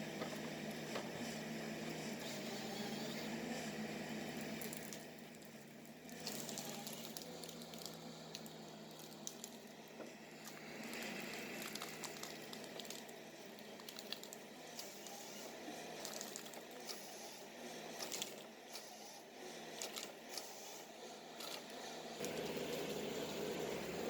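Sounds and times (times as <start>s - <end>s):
crunching and crackling: 4.7s - 20.6s
distant diesel engine hum: 14.4s - 24.0s.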